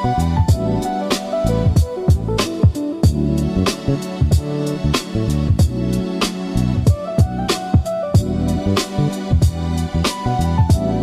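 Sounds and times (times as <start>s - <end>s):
background music with beat: 0.0s - 11.0s.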